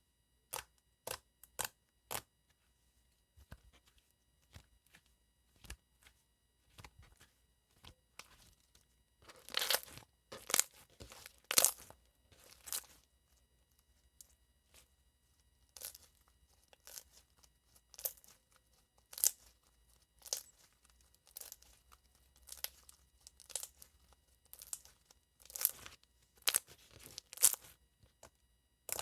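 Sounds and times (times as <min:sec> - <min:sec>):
slime squelching by hand: 0:09.2 - 0:13.0.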